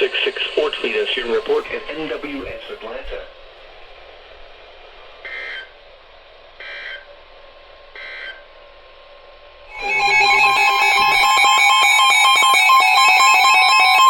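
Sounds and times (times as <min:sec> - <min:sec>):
loud pulsing electronic tones: 0:00.0 - 0:03.1, 0:09.7 - 0:14.0
shrill digital data bursts: 0:09.7 - 0:14.0.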